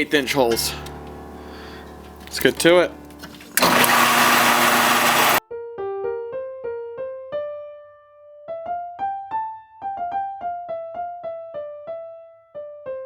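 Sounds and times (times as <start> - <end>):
electric piano melody: 0.0 - 7.2.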